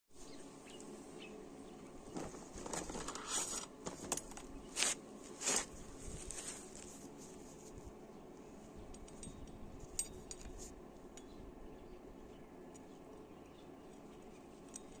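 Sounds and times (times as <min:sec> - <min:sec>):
scraping and clicking handling noise: 0:02.1 - 0:08.0, 0:08.6 - 0:11.4, 0:12.7 - 0:15.0.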